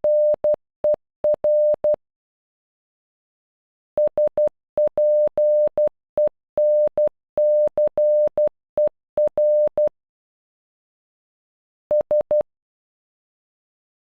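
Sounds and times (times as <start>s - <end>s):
morse code beeps: 1.3s - 2.0s, 4.0s - 9.9s.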